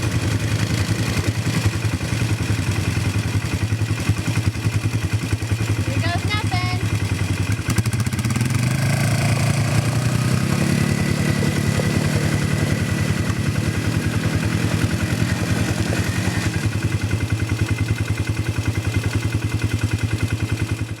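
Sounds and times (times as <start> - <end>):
atv engine running: 0.0 - 21.0
clatter on rocky road: 7.4 - 20.9.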